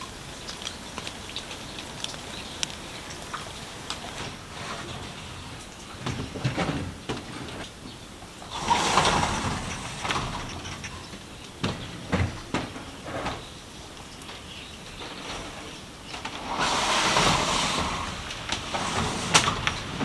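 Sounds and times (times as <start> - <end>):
loud scraping slide: 8.4 - 11.0, 16.2 - 20.0.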